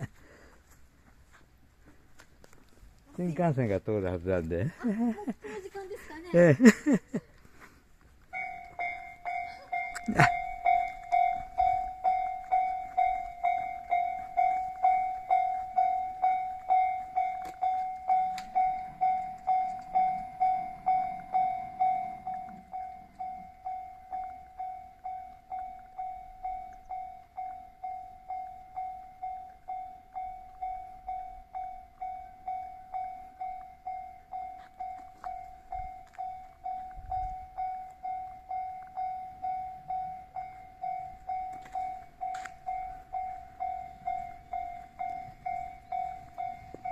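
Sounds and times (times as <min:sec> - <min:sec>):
level crossing alarm dinging: 0:08.2 - 0:46.9.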